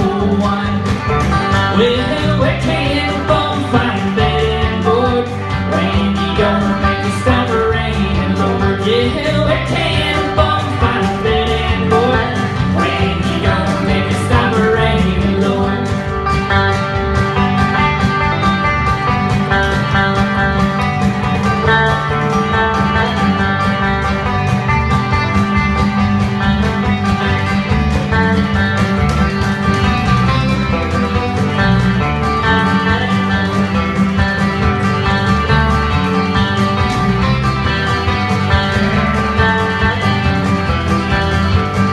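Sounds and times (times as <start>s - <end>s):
person singing: 0.0s - 16.4s, 30.8s - 33.8s, 39.0s - 40.5s
country band playing: 0.0s - 41.9s
guitar: 0.0s - 41.9s
steady bass: 0.0s - 41.9s.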